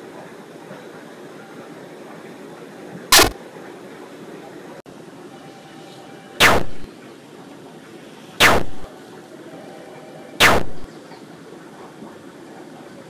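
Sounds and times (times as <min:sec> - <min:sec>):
sharp noisy downward sliding burst: 0:03.1 - 0:03.4, 0:06.4 - 0:06.9, 0:08.4 - 0:08.9, 0:10.4 - 0:10.9.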